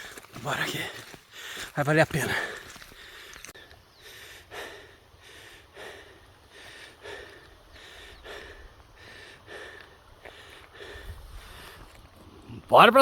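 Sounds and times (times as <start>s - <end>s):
person breathing hard: 1.2s - 12.0s.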